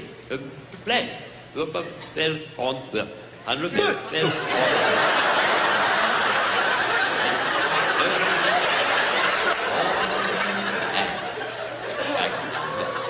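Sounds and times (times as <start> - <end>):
audience laughing: 3.8 - 13.0.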